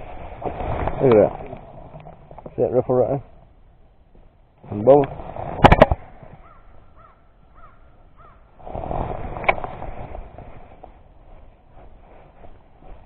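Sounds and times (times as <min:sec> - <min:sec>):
rustling: 0:04.1 - 0:13.0
bird calling: 0:06.2 - 0:08.6.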